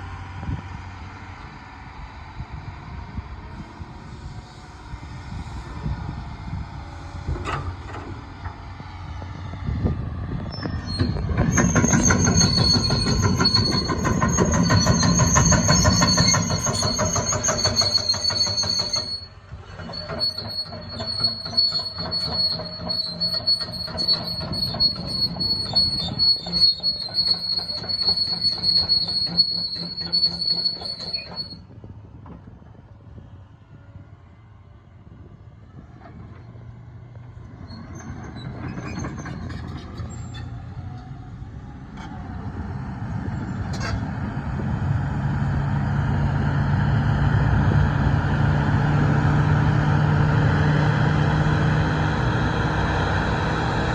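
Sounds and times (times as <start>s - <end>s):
diesel engine rumble: 0.0s - 53.9s
excavator track squeal: 3.5s - 32.8s, 35.6s - 53.9s
track links clanking: 10.6s - 31.6s.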